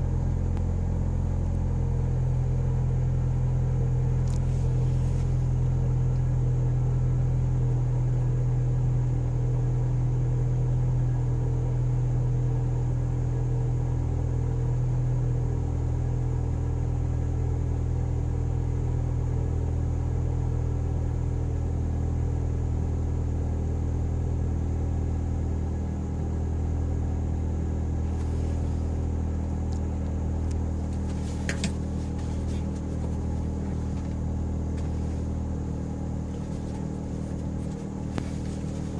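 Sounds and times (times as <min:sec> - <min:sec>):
car engine idling: 0:00.0 - 0:12.4, 0:25.4 - 0:38.9.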